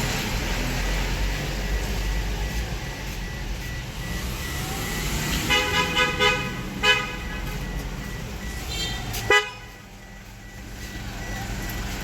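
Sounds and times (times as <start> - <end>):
low traffic noise: 0.0 - 12.0
vehicle horn honking: 5.4 - 7.5, 8.7 - 9.7.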